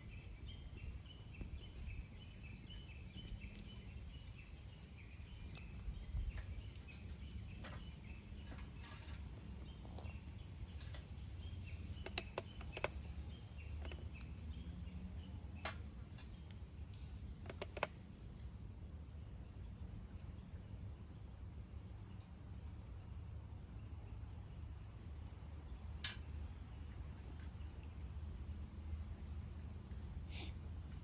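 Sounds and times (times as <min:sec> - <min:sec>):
faint bird chirps: 0:00.0 - 0:17.9
low steady rumble: 0:00.0 - 0:31.0.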